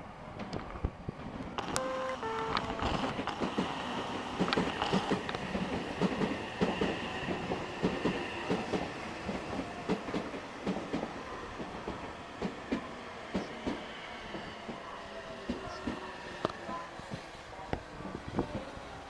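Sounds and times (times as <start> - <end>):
train wheels clicking over rail joints: 2.6 - 13.8.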